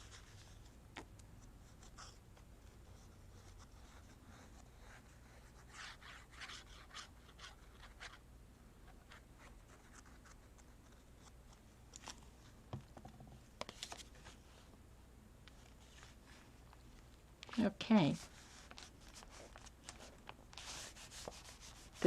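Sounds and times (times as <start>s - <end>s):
paper scratching and rubbing: 1.6s - 8.2s, 17.5s - 22.0s.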